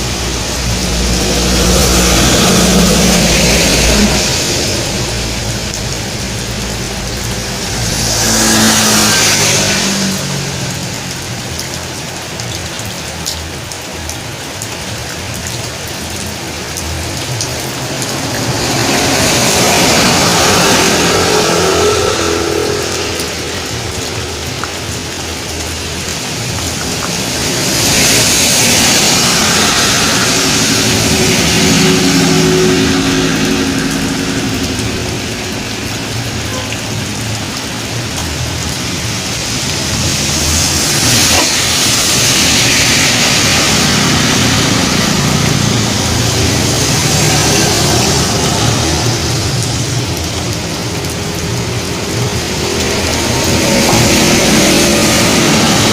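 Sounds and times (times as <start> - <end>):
steady rain: 0.0 - 55.9
tyres hissing on wet road: 0.0 - 55.9
vehicle engine hum: 0.0 - 55.9.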